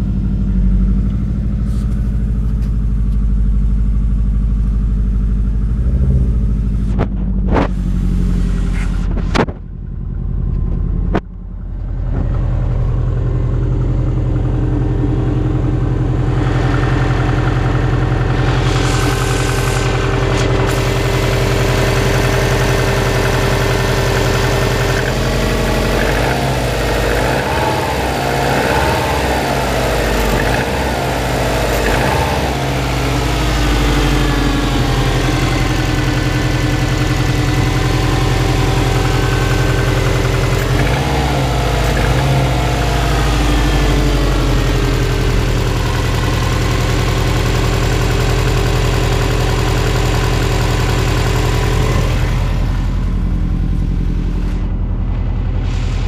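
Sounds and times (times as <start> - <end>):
car engine idling: 0.0 - 56.0.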